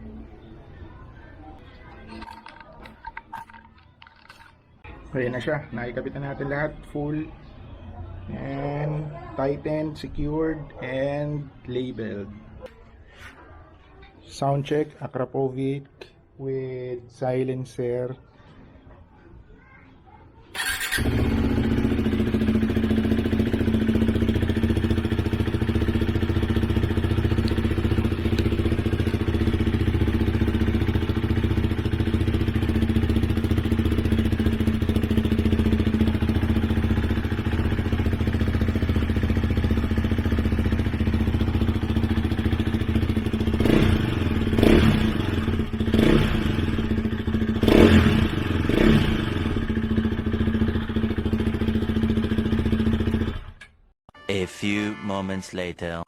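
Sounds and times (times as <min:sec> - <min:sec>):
motorcycle engine idling and revving: 0:20.6 - 0:53.8.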